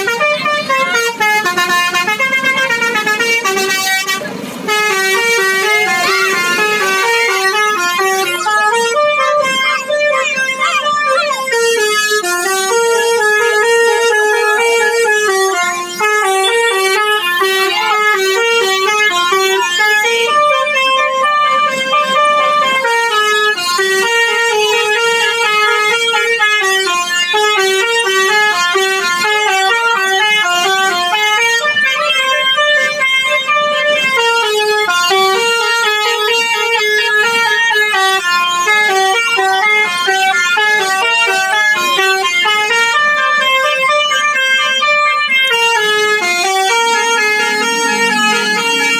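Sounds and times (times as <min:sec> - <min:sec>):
multi-tone musical bus horn: 0:00.0 - 0:48.9.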